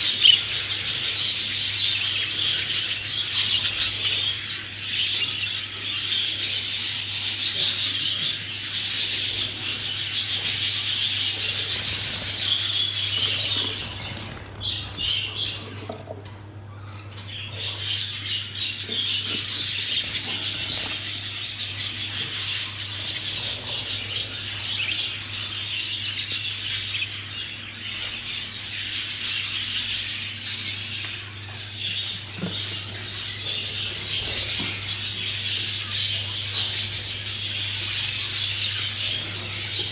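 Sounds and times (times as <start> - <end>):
budgerigars chattering and warbling: 0.0 - 39.9.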